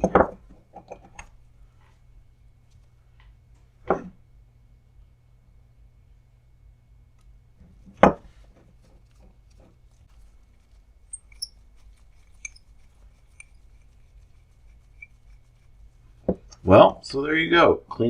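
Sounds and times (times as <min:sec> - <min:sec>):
vise screw clicking and ticking: 0:11.1 - 0:11.6.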